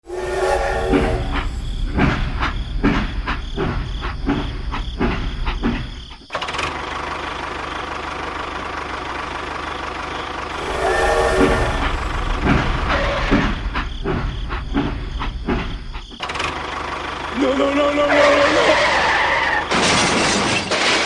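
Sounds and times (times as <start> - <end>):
engine knocking: 2.0 - 10.5.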